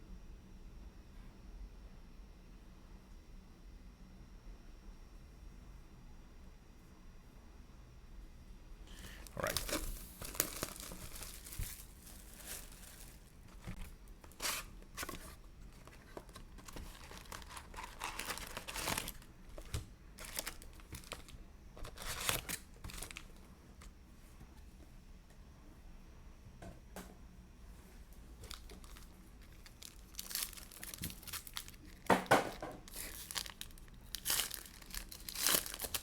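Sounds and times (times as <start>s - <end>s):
plastic wrapping tearing and crinkling: 8.9s - 23.4s, 28.4s - 36.0s.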